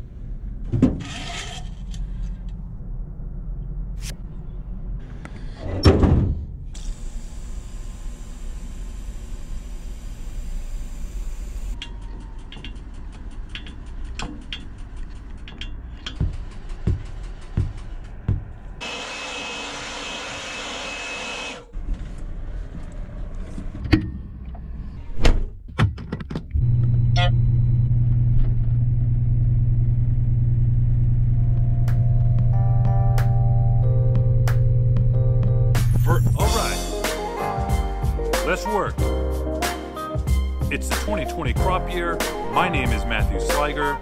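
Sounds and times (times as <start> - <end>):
low engine drone: 1.6 - 5.8, 26.6 - 44.0
machinery clicks and knocks: 11.8 - 18.8.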